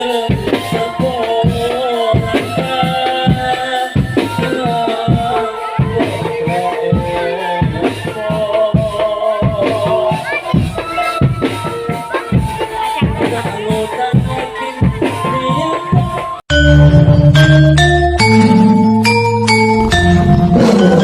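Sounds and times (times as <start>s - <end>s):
drum strikes: 0.0s - 21.0s
rattling percussion: 0.1s - 21.0s
wavering melody: 16.5s - 21.0s.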